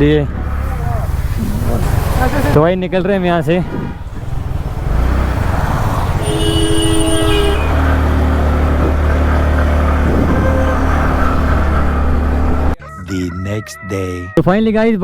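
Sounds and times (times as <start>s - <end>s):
vehicle engine rumble: 0.0s - 12.8s
vehicle horn: 5.4s - 12.8s.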